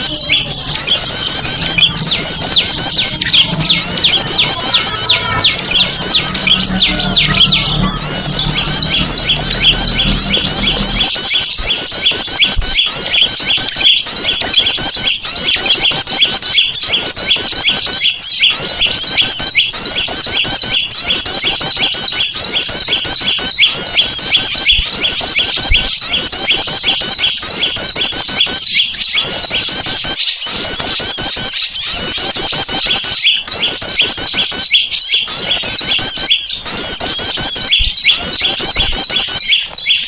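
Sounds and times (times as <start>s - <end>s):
small birds chirping chorus: 0.0s - 40.0s
low hum: 0.1s - 11.4s.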